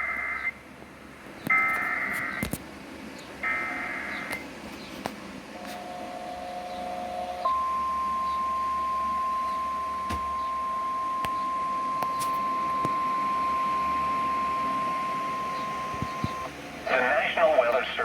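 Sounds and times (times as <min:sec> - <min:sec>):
steady warning alarm tone: 0:01.5 - 0:02.4, 0:03.4 - 0:04.4, 0:05.6 - 0:16.9
two-tone chord: 0:05.8 - 0:16.4.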